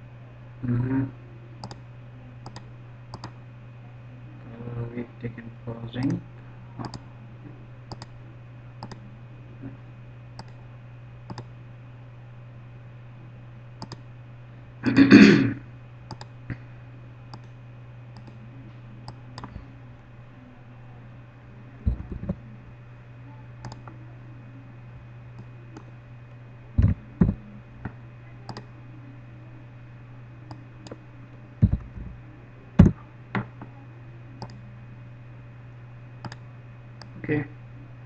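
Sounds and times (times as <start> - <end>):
steady low hum: 0.0 - 38.0.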